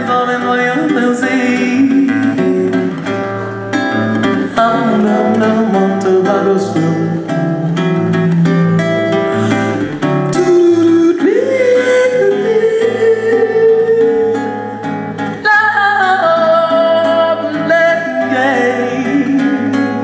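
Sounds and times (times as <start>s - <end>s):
woman singing: 0.0s - 3.0s, 4.5s - 7.2s, 10.3s - 14.6s, 15.2s - 20.0s
acoustic guitar strumming: 0.0s - 20.0s.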